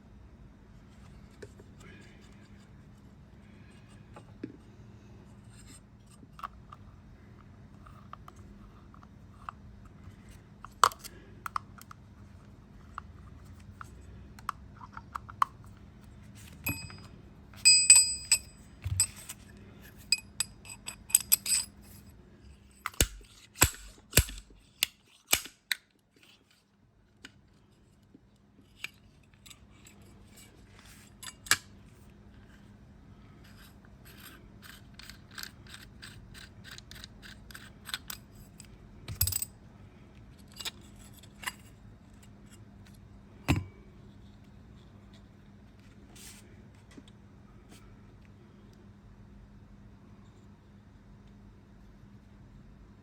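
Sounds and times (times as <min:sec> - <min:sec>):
faint steady hum: 0:00.0 - 0:53.0
metal tools clicking and clinking: 0:16.6 - 0:19.4, 0:20.0 - 0:22.0, 0:34.1 - 0:39.5
ringing metallic taps: 0:16.7 - 0:17.1.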